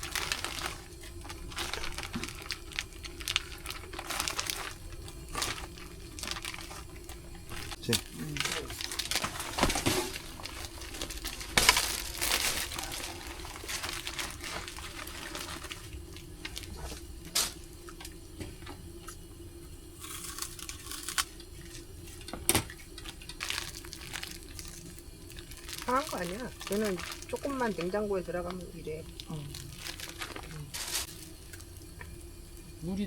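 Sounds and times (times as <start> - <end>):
rustling: 0.0 - 17.5, 29.2 - 31.3
steady hum: 0.0 - 33.0.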